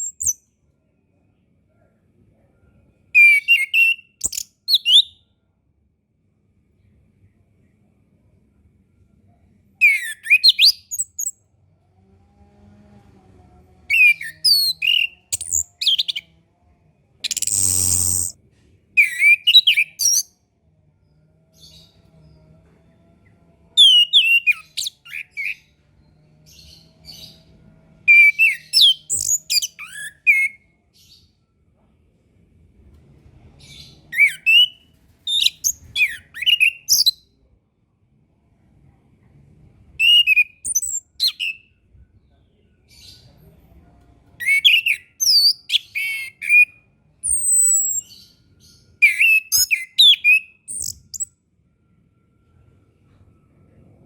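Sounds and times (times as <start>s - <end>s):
thrush singing whistled phrases: 13.9s - 16.2s, 34.2s - 37.1s, 49.0s - 51.2s.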